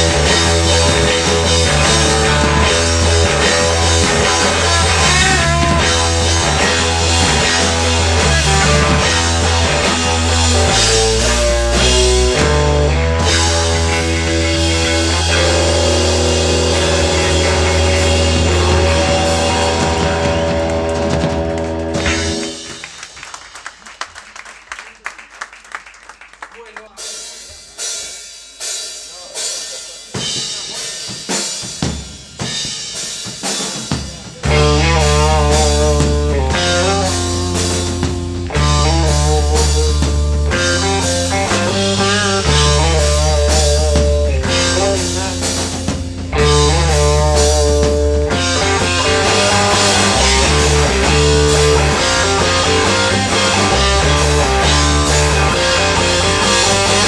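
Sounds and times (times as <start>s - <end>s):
rock band playing: 0.0s - 24.2s, 27.0s - 57.0s.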